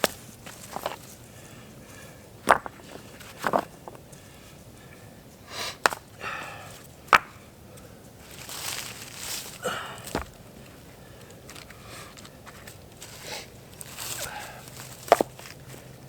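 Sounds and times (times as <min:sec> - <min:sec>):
brush rustling: 0:00.0 - 0:02.0, 0:07.7 - 0:16.0
dry sticks snapping: 0:07.1 - 0:15.8.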